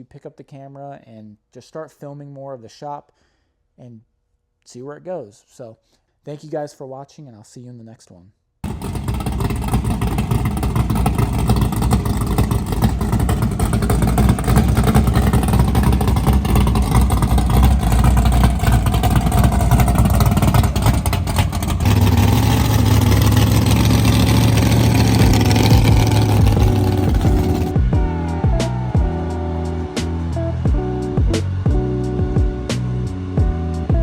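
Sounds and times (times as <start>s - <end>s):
car engine running: 8.6s - 34.0s.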